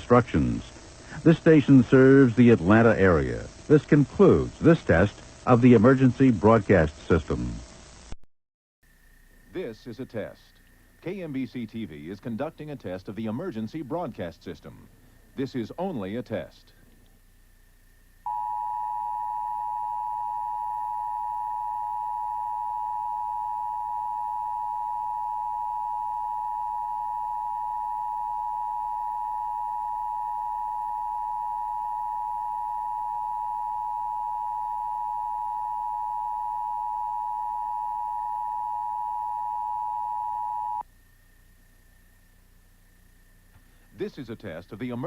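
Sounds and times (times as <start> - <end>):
two-tone attention signal: 18.3 - 40.8.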